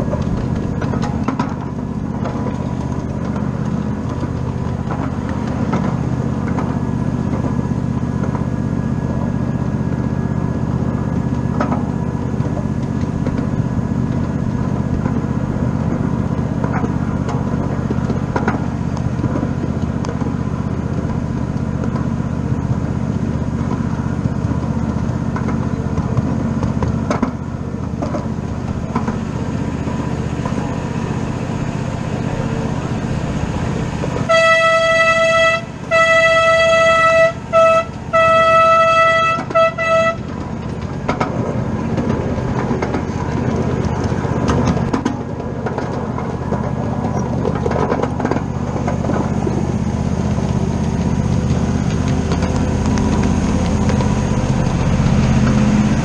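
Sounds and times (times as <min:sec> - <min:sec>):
miniature steam train rumbling: 0:00.0 - 0:56.0
train whistle: 0:34.2 - 0:40.3.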